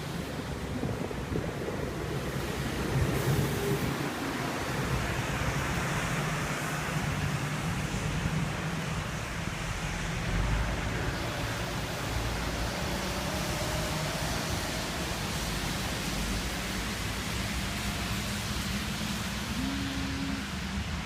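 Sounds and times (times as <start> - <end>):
low drone: 12.1 - 21.0
long low drawn-out tones: 17.8 - 21.0
short higher tone: 19.6 - 20.7.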